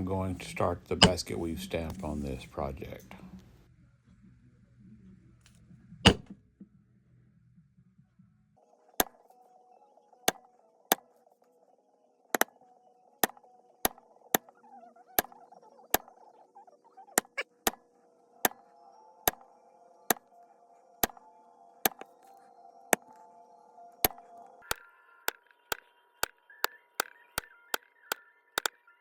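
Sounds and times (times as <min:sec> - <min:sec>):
background music: 0:00.0 - 0:29.0
mallet tapping leather stamp: 0:01.0 - 0:01.2, 0:06.1 - 0:06.4, 0:10.3 - 0:11.0, 0:13.2 - 0:14.5, 0:21.9 - 0:22.1, 0:24.0 - 0:24.2.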